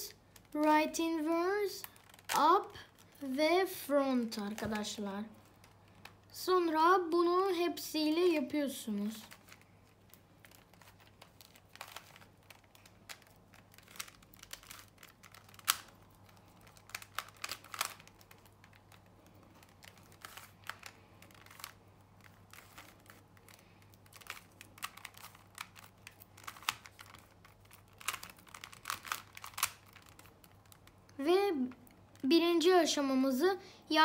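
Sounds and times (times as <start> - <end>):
puzzle cube plastic clicks: 9.2 - 32.3.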